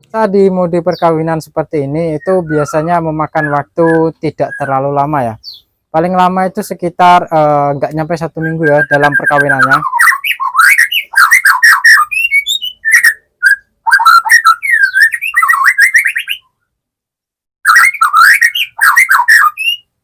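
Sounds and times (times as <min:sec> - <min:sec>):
bird chirping and whistling: 0:02.0 - 0:05.7, 0:07.8 - 0:16.5, 0:17.6 - 0:20.0.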